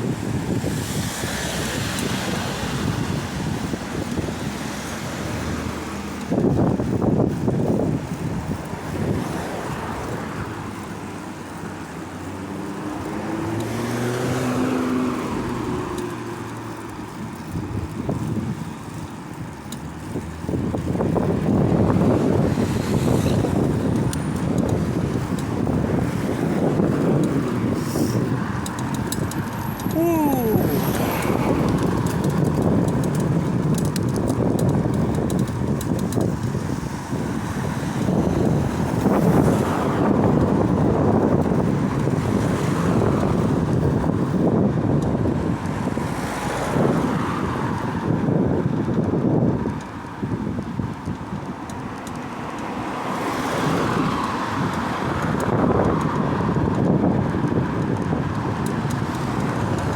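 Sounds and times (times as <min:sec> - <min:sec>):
wind buffeting microphone: 0:00.0 - 0:59.9
vehicle passing by: 0:12.4 - 0:16.8, 0:24.6 - 0:32.2.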